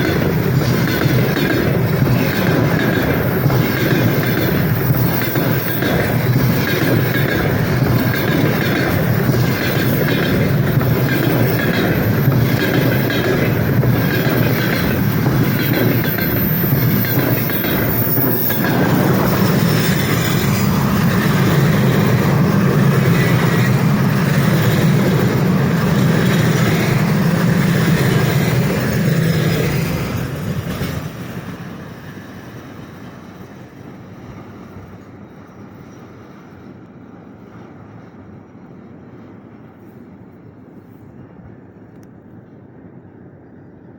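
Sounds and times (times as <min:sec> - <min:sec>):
wheels clattering over rail joints: 0:00.0 - 0:31.2
train passing at speed: 0:00.0 - 0:43.9.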